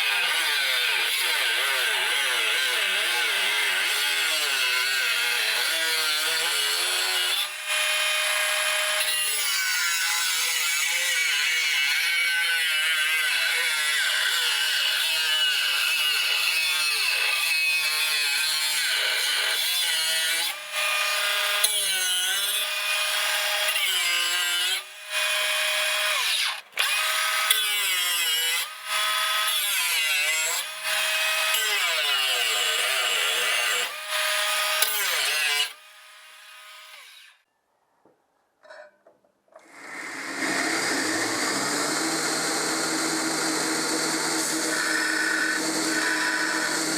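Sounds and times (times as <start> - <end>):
power tool grinding metal: 0.0 - 37.4, 39.6 - 46.9
high motor whine: 39.7 - 46.9.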